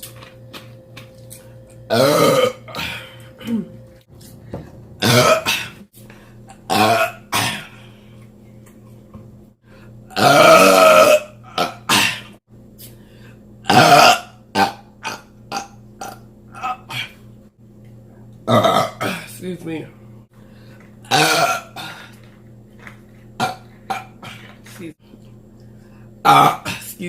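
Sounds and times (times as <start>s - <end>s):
person belching: 1.9s - 3.8s, 5.0s - 5.8s, 6.5s - 7.7s, 10.1s - 12.4s, 13.6s - 17.2s, 18.5s - 19.3s, 21.0s - 22.1s, 23.4s - 24.5s, 26.2s - 26.9s.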